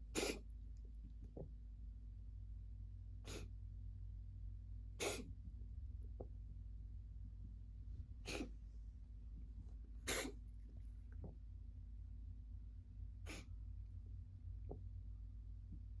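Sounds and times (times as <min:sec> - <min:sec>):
cat snorting through nose: 0:00.1 - 0:00.4, 0:03.2 - 0:03.5, 0:05.0 - 0:05.4, 0:08.2 - 0:08.6, 0:10.0 - 0:10.4, 0:13.2 - 0:13.5.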